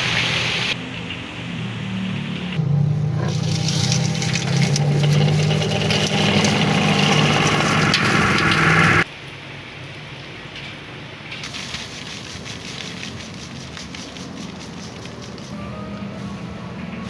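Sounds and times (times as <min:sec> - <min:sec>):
oil spinner motor humming: 0:02.6 - 0:09.1
shallots sizzling in oil: 0:03.3 - 0:09.0, 0:11.4 - 0:15.4.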